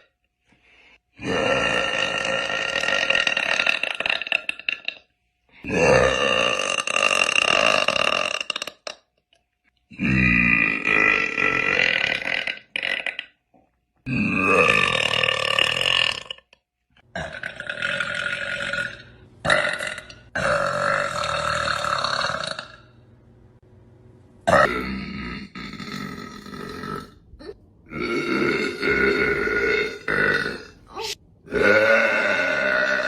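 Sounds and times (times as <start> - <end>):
woman burping: 1.2 - 9.1, 24.5 - 33.0.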